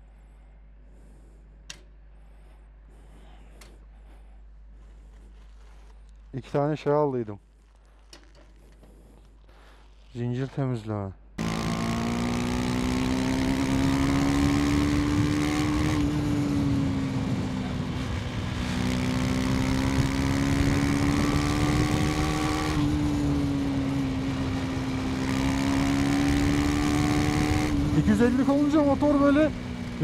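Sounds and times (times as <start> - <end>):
motorcycle engine revving: 11.4 - 30.0.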